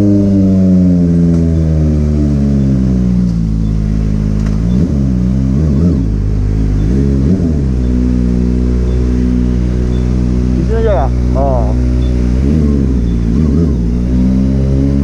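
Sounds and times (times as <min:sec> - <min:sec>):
motorcycle engine revving: 0:00.0 - 0:15.0.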